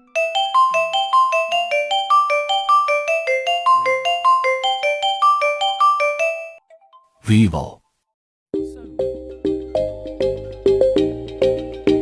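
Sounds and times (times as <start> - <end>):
marimba-like phone ringtone: 0.2 - 7.0.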